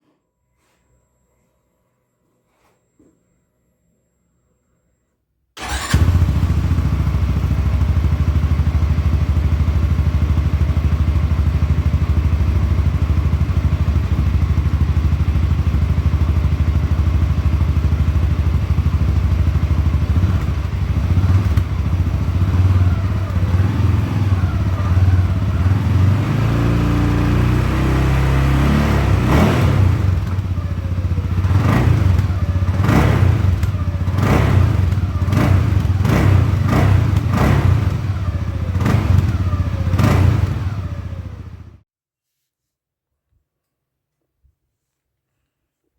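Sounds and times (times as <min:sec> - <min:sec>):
atv engine revving: 0:05.6 - 0:41.8.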